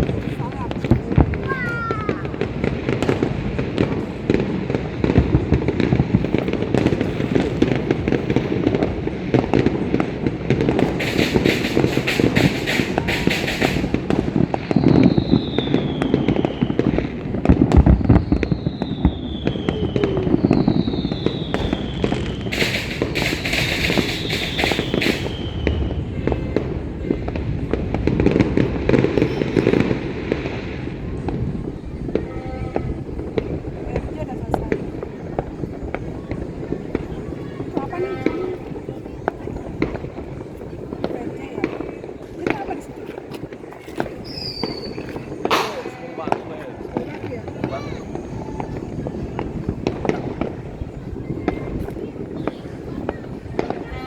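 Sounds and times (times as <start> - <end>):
fireworks crackling: 0.0 - 54.0
fireworks popping and banging: 0.0 - 54.0
falling firework whistles: 10.7 - 27.4, 44.1 - 46.4.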